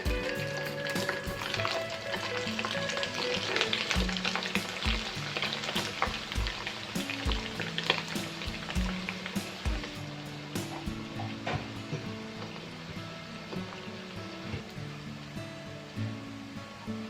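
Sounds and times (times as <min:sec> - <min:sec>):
music beat: 0:00.0 - 0:12.2
food sizzling in hot oil: 0:00.0 - 0:15.3.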